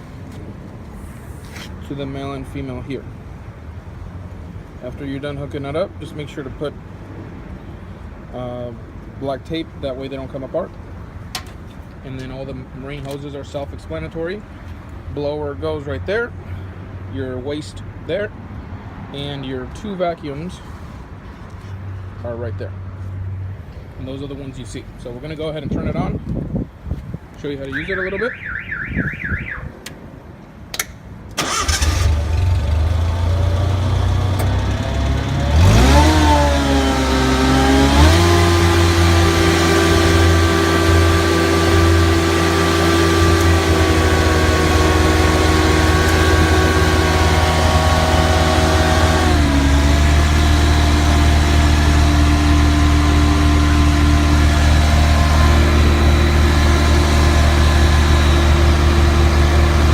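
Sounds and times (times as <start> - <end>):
machine engine starting and running: 31.4 - 59.9.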